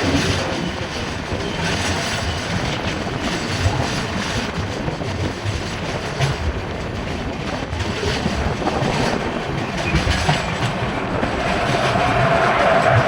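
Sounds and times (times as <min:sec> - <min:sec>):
train wheels clicking on rail joints: 0:00.0 - 0:13.0
steady whine: 0:08.7 - 0:13.0.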